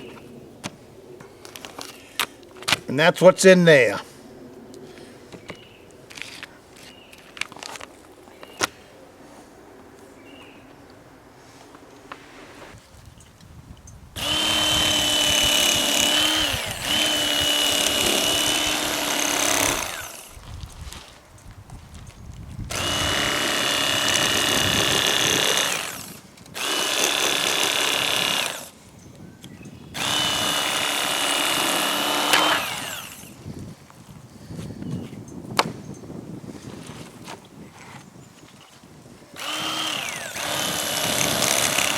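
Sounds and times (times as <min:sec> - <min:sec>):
small electric motor running: 0:14.2 - 0:20.4, 0:22.7 - 0:28.8, 0:30.0 - 0:33.4, 0:39.4 - 0:41.9.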